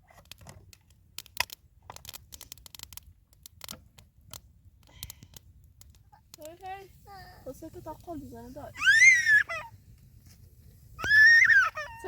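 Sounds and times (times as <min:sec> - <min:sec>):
quick clicks and crackles: 0:00.0 - 0:06.7.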